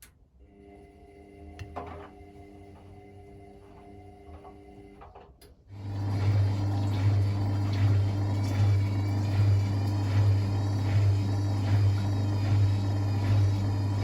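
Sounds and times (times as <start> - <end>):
drain pump humming: 5.7 - 14.0
water rushing through pump: 5.8 - 14.0.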